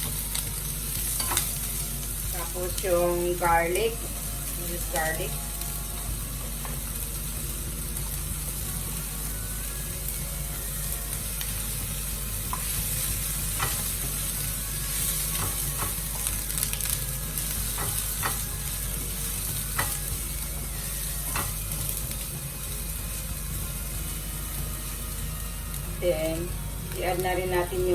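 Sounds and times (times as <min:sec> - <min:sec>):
onion and garlic sizzling in oil: 0:00.0 - 0:27.9
utensil clicking against pan: 0:17.4 - 0:18.5, 0:19.7 - 0:20.2.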